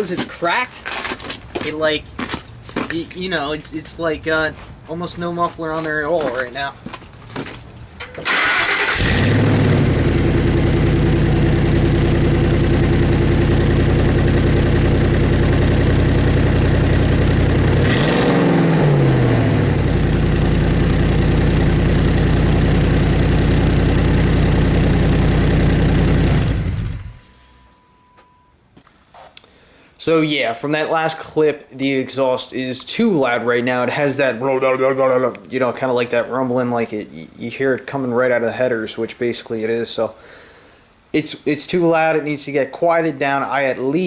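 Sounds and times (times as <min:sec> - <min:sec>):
truck engine cranking: 0:07.0 - 0:27.2
engine revving: 0:08.3 - 0:27.3
truck engine idling loudly: 0:08.6 - 0:27.2.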